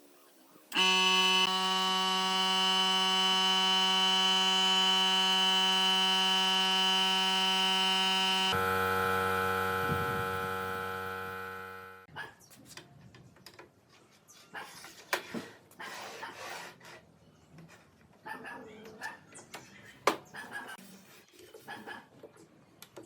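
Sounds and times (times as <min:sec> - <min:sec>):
sustained electronic tone: 0:00.7 - 0:12.1.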